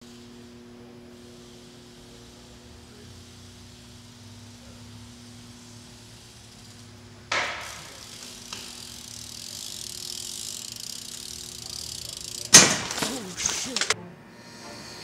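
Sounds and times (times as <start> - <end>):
bike tyres rolling hiss: 0.0 - 15.0
steady low hum: 0.0 - 15.0
bike jolt: 5.6 - 14.0.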